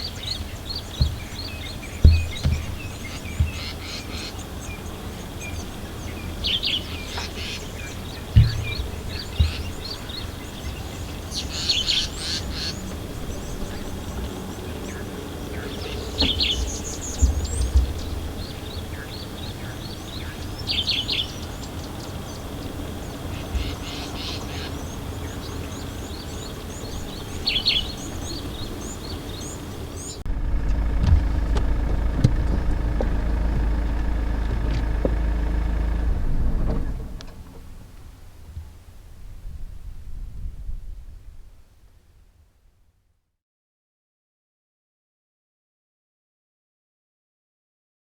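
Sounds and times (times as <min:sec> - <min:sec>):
wild birds calling and chirping: 0:00.0 - 0:36.7
low thumps: 0:00.4 - 0:04.0, 0:07.2 - 0:11.1, 0:16.2 - 0:18.7, 0:30.3 - 0:38.0.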